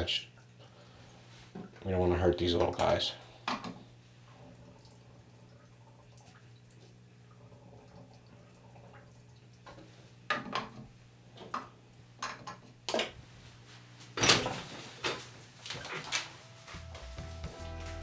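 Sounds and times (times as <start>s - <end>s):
background music: 16.4s - 18.0s.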